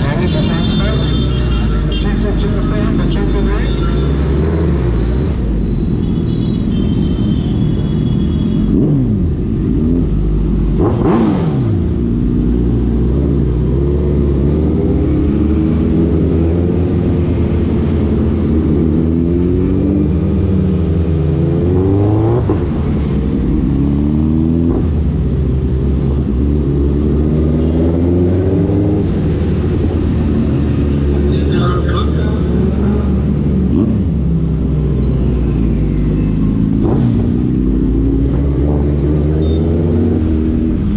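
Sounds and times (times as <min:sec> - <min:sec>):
motorcycle engine revving: 0:08.6 - 0:40.9.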